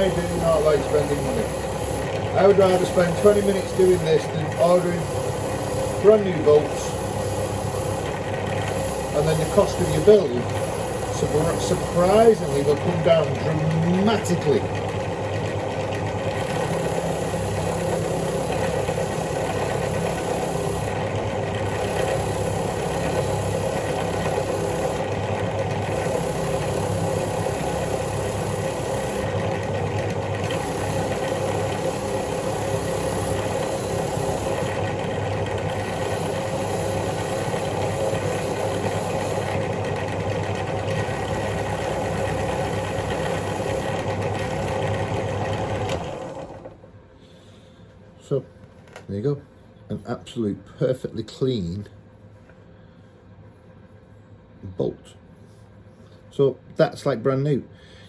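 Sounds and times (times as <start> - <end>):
wire wheel scratchy brushing: 0.0 - 14.6, 16.0 - 45.4
motor hum: 0.0 - 47.0.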